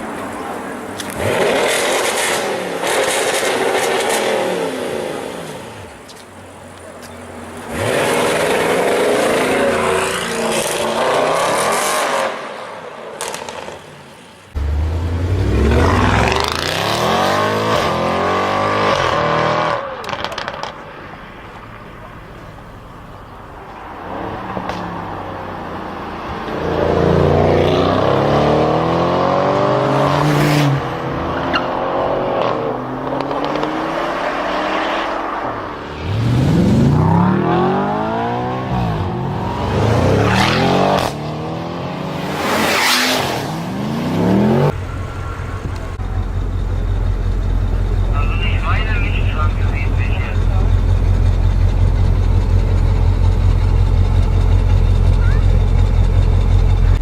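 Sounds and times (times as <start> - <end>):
car engine accelerating hard: 14.5 - 20.8, 23.9 - 57.0
exhaust cracks: 19.9 - 21.0, 44.6 - 57.0.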